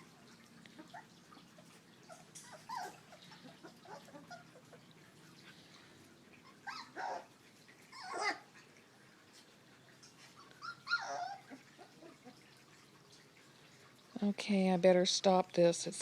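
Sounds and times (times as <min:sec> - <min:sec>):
puppies whimpering and yipping: 0:00.0 - 0:08.8, 0:10.0 - 0:12.6
puppy cries: 0:00.8 - 0:04.8, 0:06.4 - 0:08.6, 0:10.4 - 0:12.4.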